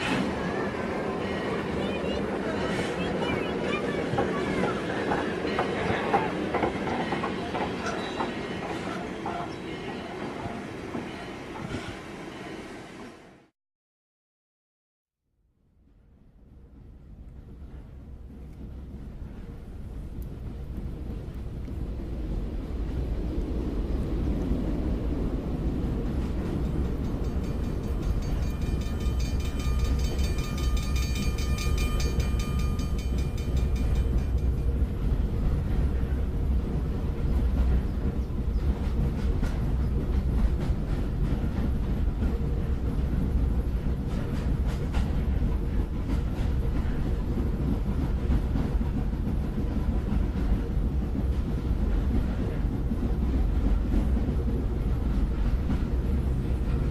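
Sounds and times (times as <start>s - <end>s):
train rumbling past: 0.0s - 13.5s, 15.7s - 56.9s
train wheel clicks: 26.2s - 34.7s.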